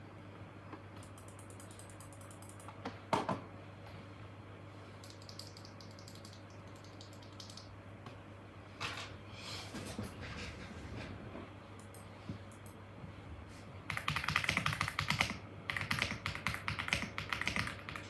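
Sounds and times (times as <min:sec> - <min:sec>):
mechanical keyboard typing: 0:01.0 - 0:02.7, 0:05.0 - 0:07.7, 0:13.9 - 0:18.0.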